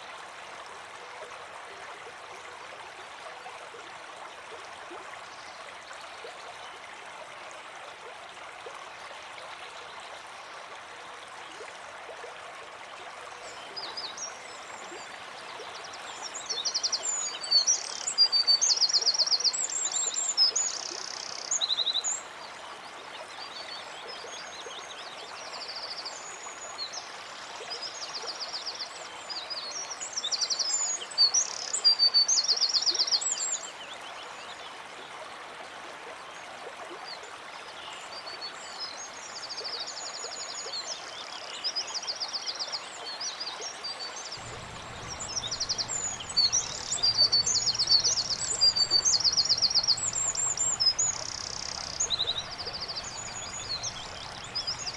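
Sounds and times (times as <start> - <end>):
songbirds trilling and chirping: 13.5 - 28.4, 43.9 - 54.9
steady background hiss: 44.3 - 54.9
low steady hum: 44.4 - 54.9.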